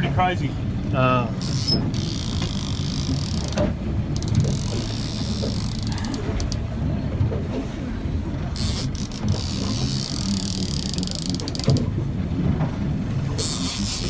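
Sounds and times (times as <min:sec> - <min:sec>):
boat engine idling: 0:00.0 - 0:14.0.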